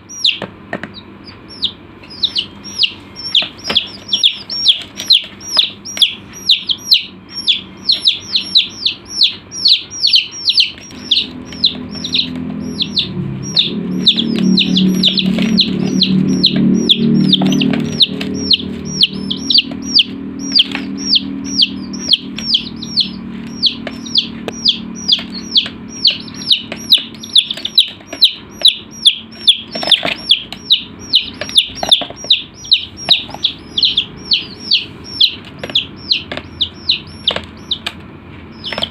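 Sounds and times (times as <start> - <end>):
chicks peeping: 0.0 - 38.9
low hum: 0.0 - 38.9.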